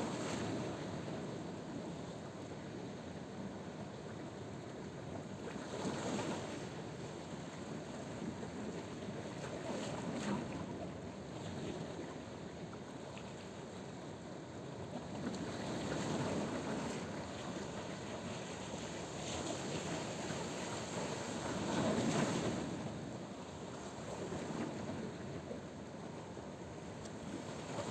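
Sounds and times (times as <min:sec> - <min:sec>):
surf washing on shore: 0:15.6 - 0:25.4, 0:27.1 - 0:27.9.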